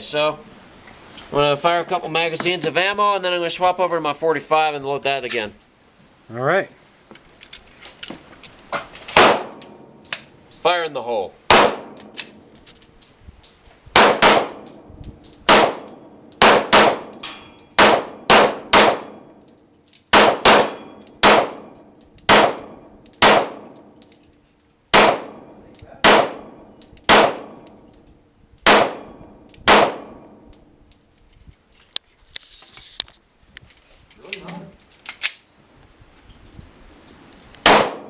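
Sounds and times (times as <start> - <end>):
pistol shots: 9.1 - 9.8, 11.5 - 12.2, 14.0 - 14.6, 15.5 - 19.2, 20.1 - 23.8, 24.9 - 27.6, 28.6 - 30.3, 37.6 - 38.0.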